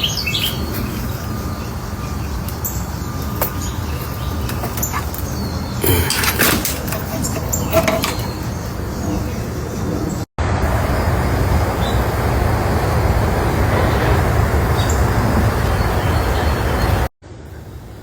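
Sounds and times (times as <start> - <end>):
loud low traffic rumble: 0.0 - 18.0.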